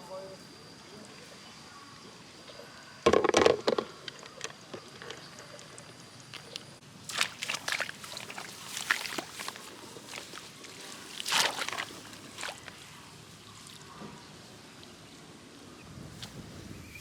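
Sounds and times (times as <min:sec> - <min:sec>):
shallow water splashing: 0:07.0 - 0:13.9.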